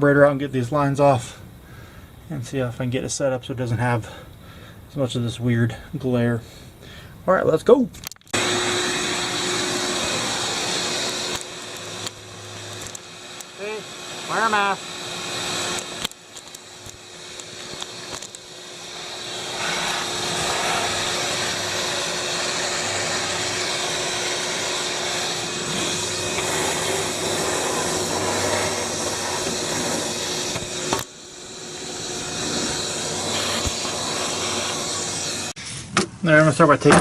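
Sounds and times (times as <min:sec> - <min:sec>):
vacuum cleaner running: 0:08.4 - 0:35.6.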